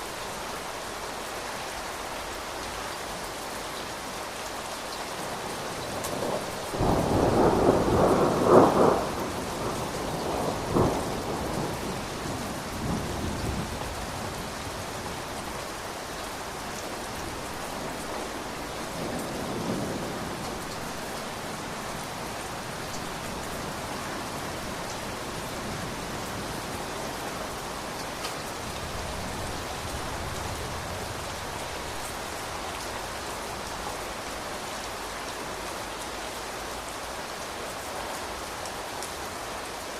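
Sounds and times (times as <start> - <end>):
steady rain falling: 0.0 - 39.9
thunder rumbling: 6.3 - 14.2.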